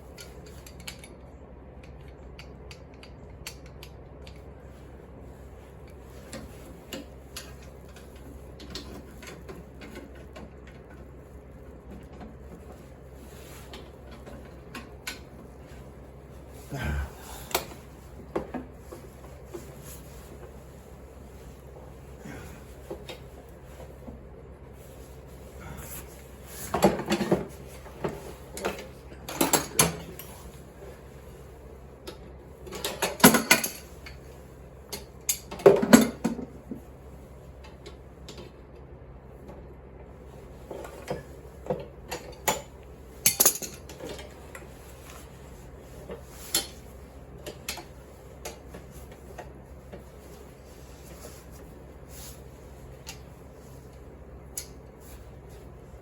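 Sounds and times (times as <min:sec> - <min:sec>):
metal parts and tools clanking: 0:42.1 - 0:44.4.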